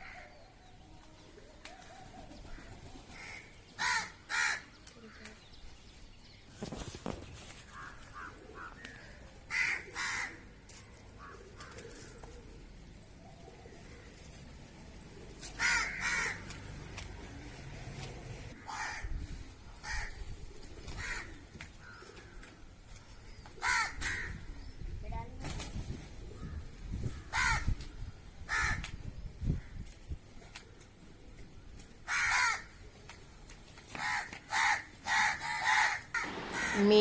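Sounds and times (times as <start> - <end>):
crows cawing: 0.0 - 0.3, 2.5 - 5.2, 7.7 - 10.5, 15.6 - 16.7, 18.6 - 19.2, 19.8 - 20.2, 20.9 - 22.6, 23.6 - 24.4, 27.1 - 27.7, 28.5 - 28.8, 32.0 - 32.7, 34.0 - 37.0.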